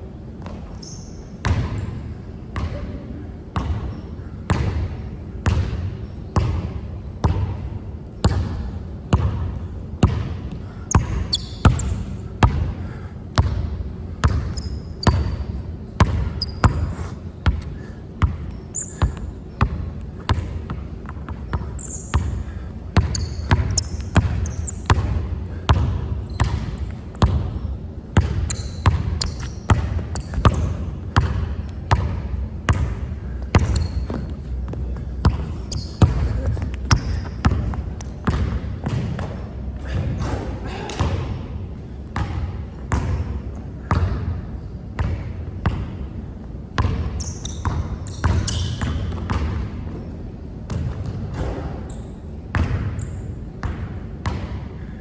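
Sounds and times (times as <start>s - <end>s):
basketball bouncing on court: 0.4s - 1.9s, 2.6s - 2.8s, 3.6s - 41.4s, 42.0s - 46.0s, 46.8s - 50.0s, 50.7s - 54.7s
shoe squeaks: 0.7s - 1.9s, 10.9s - 12.4s, 14.3s - 20.3s, 21.4s - 25.2s, 26.2s - 27.1s, 28.3s - 31.0s, 33.3s - 38.4s, 47.1s - 49.1s, 51.8s - 52.3s, 53.0s - 53.4s.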